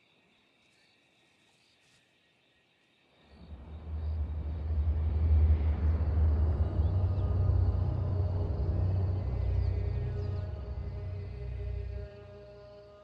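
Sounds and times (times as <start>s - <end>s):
faint night insects chirring: 0.0s - 13.0s
low ominous music drone: 3.3s - 13.0s.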